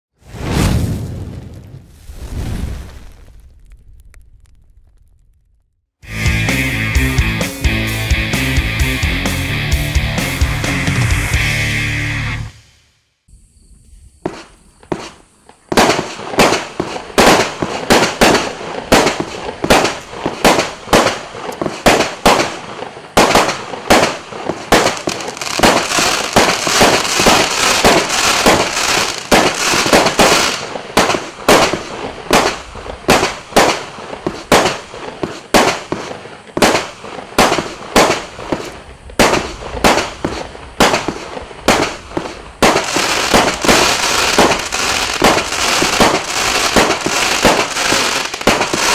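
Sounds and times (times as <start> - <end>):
crackling hiss: 0.2 - 5.7, 12.5 - 48.9
fireworks battery firing: 14.3 - 48.9.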